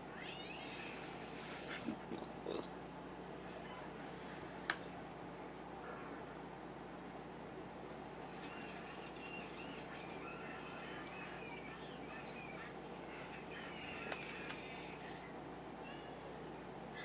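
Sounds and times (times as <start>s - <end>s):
birds chirping: 8.3s - 14.2s.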